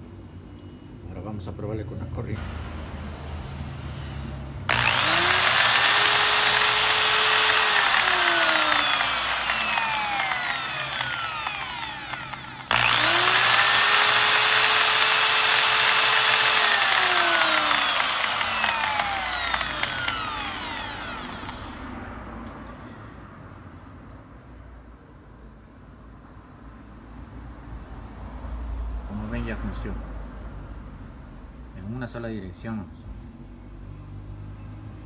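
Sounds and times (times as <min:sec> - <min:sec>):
electric drill motor whining: 0:04.7 - 0:21.9.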